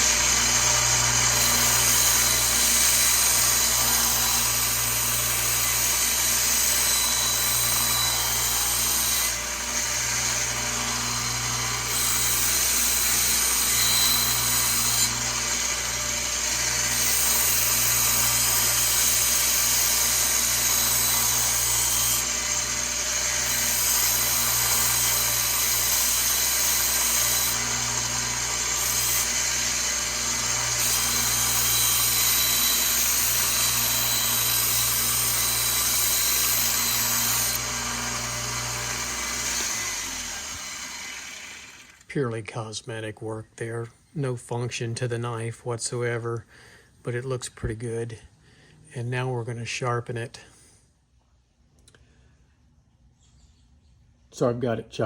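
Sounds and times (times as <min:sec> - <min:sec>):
grinder motor running: 0:00.0 - 0:42.1.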